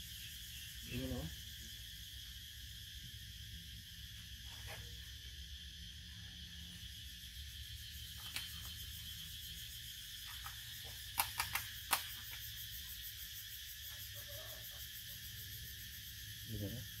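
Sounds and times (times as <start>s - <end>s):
high-pitched insect chorus: 0.0s - 17.0s
sharp clicks: 8.1s - 8.8s, 10.2s - 12.5s.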